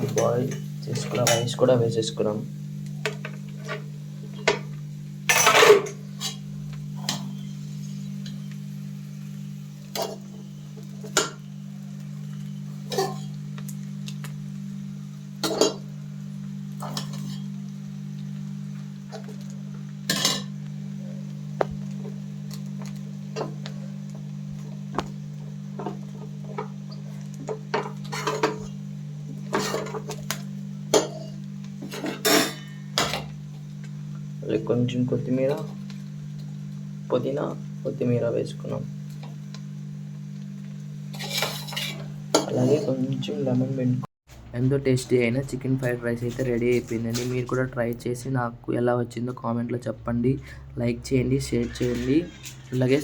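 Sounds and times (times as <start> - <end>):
steady low hum: 0.0 - 53.0
spatula scraping a pan: 16.8 - 17.6, 29.4 - 30.1, 41.1 - 43.0.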